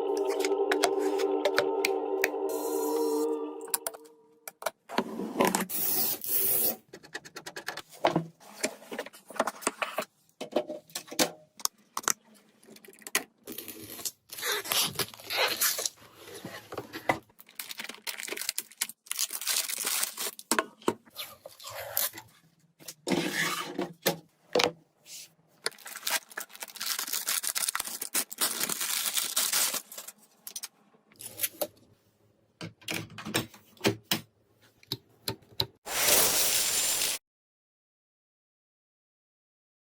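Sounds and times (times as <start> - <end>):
packaging rustling and tearing: 17.4 - 20.5, 25.6 - 31.5.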